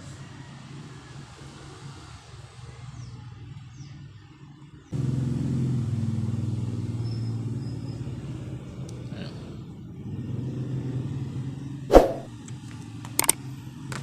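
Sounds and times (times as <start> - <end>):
motor vehicle engine running: 4.9 - 11.9.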